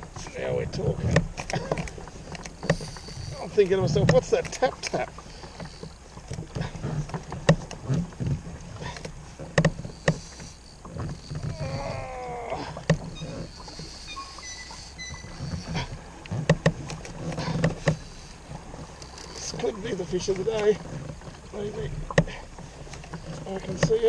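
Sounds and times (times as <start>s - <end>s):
kayak gear knocks and clicks: 0.0s - 24.0s.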